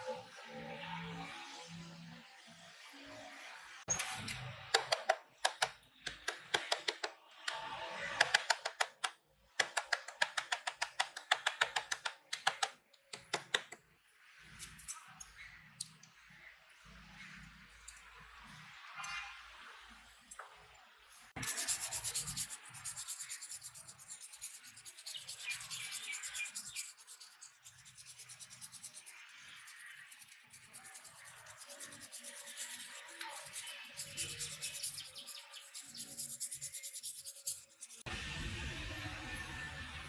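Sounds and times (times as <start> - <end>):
hand sanding strokes: 21.4 - 38.1.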